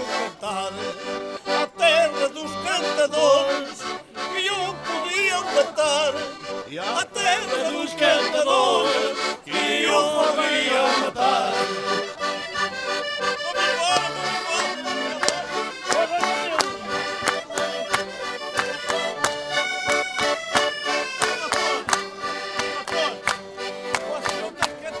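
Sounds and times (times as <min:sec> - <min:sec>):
concertinas playing dance tune: 0:02.8 - 0:25.0
sharp rhythmic knocks: 0:13.6 - 0:24.9.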